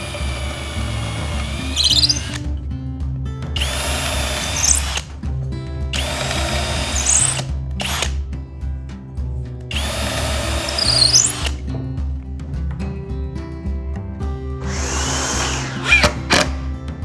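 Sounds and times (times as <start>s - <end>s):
power drill running: 0.0s - 2.4s, 3.6s - 5.1s, 6.0s - 8.2s, 9.7s - 11.6s, 14.6s - 16.6s
background music: 0.0s - 17.0s
sharp click: 14.6s - 16.6s.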